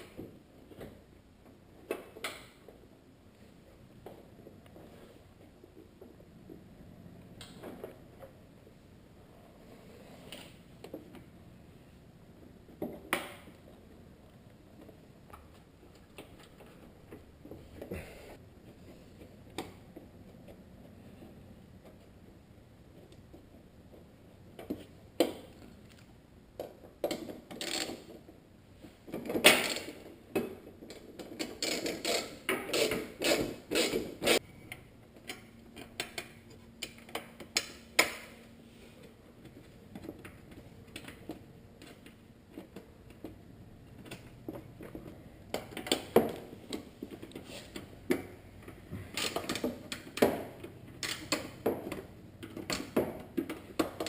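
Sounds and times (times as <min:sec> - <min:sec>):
hand tools and plastic parts clattering: 0:23.0 - 0:54.0.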